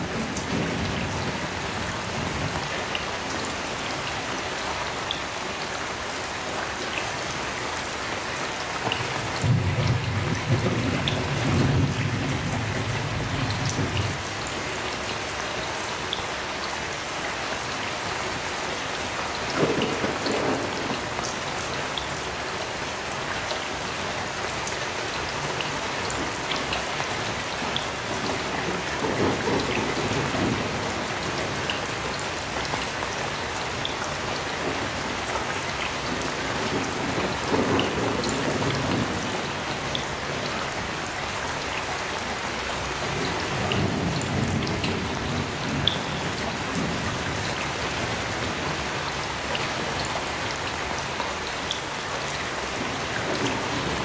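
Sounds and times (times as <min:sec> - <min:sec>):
heavy rain falling: 0:00.0 - 0:54.0
distant thunder rolling: 0:09.4 - 0:14.2, 0:28.1 - 0:32.0, 0:36.0 - 0:39.6.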